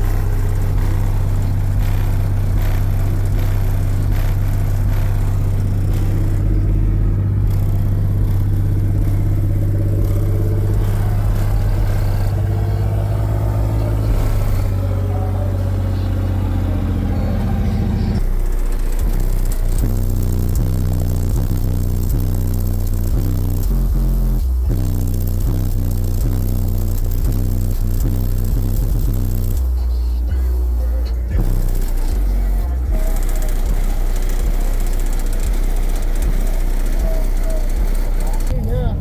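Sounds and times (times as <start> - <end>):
subwoofer deep bass: 0.0 - 39.0.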